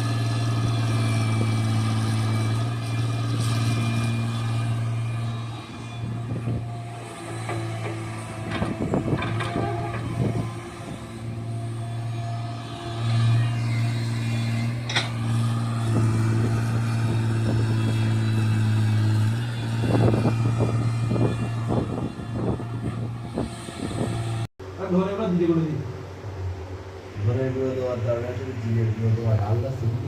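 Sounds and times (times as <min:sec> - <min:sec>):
excavator diesel engine running: 0:00.0 - 0:29.9
metal knocks and clanks: 0:07.1 - 0:10.7, 0:14.8 - 0:15.2.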